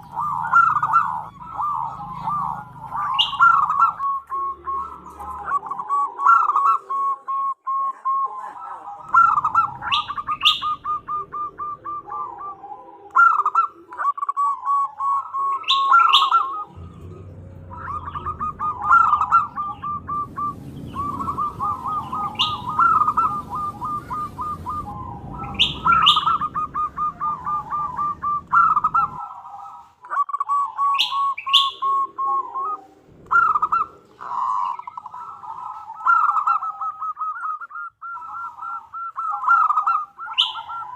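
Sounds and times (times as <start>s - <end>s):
dove trilled cooing: 0.0s - 40.9s.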